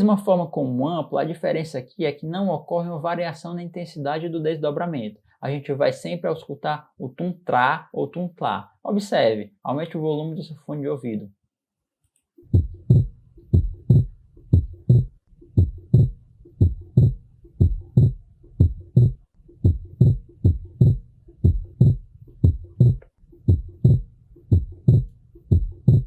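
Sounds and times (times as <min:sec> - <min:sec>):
heartbeat with split second sound: 0:12.4 - 0:26.0.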